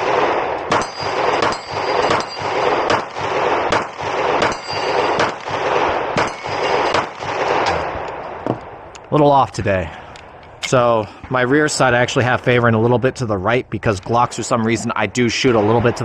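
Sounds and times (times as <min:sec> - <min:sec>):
pistol shots echoing: 0:00.0 - 0:08.9.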